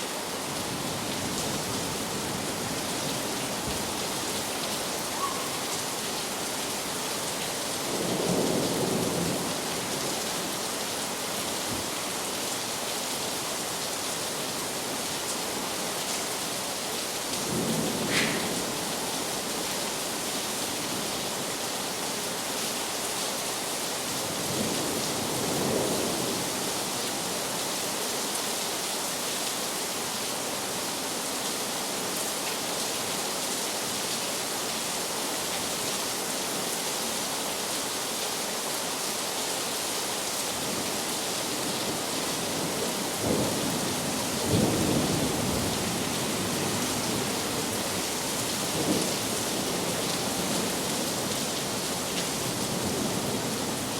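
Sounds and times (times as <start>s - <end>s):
heavy rain falling: 0.0s - 53.9s.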